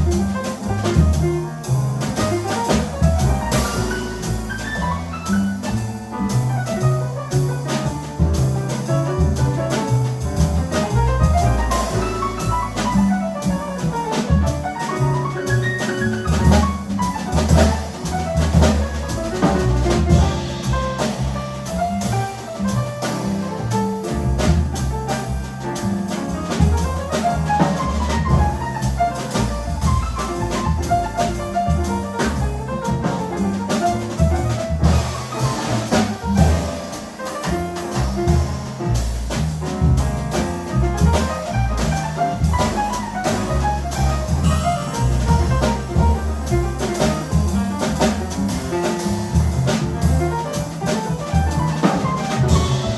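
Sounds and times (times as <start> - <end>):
double bass notes: 0.0 - 52.9
drum kit with cymbals: 0.0 - 52.9
piano lines: 0.0 - 52.9.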